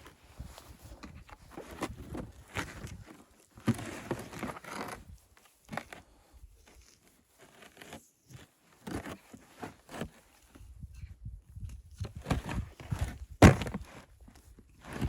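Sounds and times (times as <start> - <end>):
crunching and crinkling: 12.2 - 15.0.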